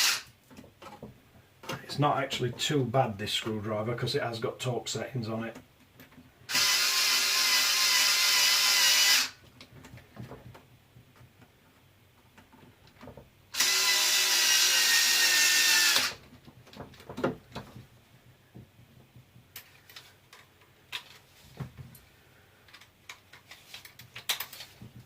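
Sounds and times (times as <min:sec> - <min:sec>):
cordless screwdriver motor whine: 0:00.0 - 0:00.2, 0:06.5 - 0:09.4, 0:13.6 - 0:16.2.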